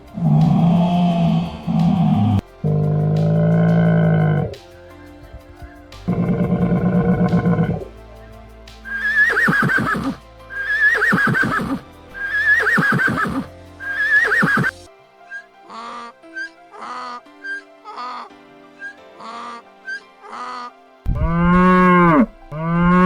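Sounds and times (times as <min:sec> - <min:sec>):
background music: 0:00.0 - 0:23.0
low drawn-out animal call: 0:00.2 - 0:04.6, 0:06.1 - 0:07.9, 0:08.9 - 0:23.0
horse whinnying: 0:06.1 - 0:07.9, 0:09.0 - 0:14.8.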